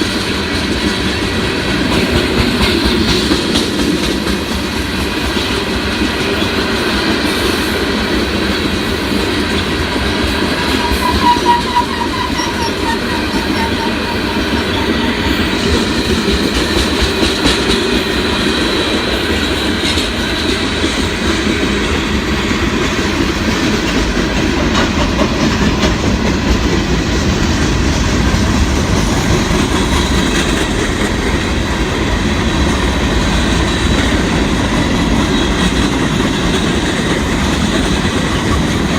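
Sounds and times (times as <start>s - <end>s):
clickety-clack over rail joints: 0.0s - 38.9s
freight train wheels rumbling: 0.0s - 38.9s
train wheel squeal: 8.5s - 27.3s, 32.6s - 38.9s.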